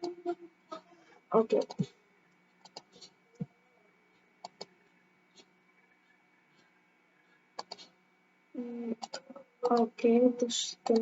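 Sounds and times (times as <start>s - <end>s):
room hiss and hum: 0.0s - 11.0s
computer mouse clicks: 2.6s - 3.1s, 4.4s - 4.7s, 7.6s - 7.9s, 8.9s - 9.9s.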